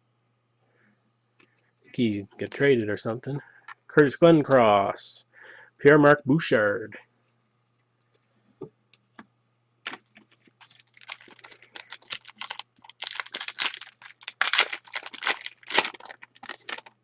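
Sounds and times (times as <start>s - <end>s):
trading cards being flipped: 9.9s - 16.9s.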